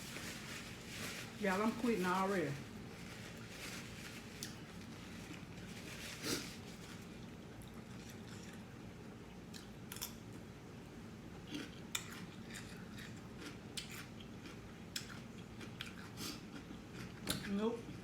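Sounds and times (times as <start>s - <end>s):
person chewing food: 7.2s - 10.2s, 11.4s - 17.5s.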